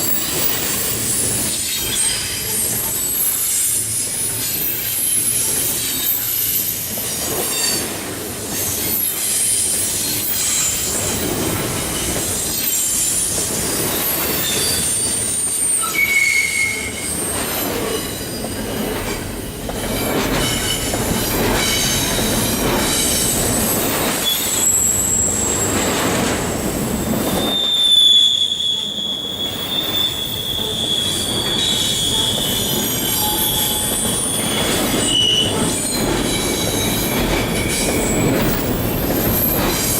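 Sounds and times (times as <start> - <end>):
long steady wheel squeal: 0.0 - 7.9, 8.5 - 18.8, 19.8 - 39.9
freight train wheels rumbling: 0.0 - 39.9
high wheel squeals: 14.0 - 18.6, 20.0 - 26.2, 27.1 - 39.9.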